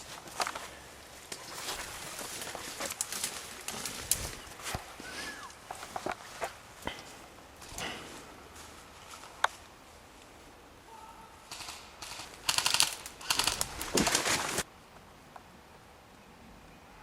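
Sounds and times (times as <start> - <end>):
airsoft guns firing bursts: 11.5 - 14.3.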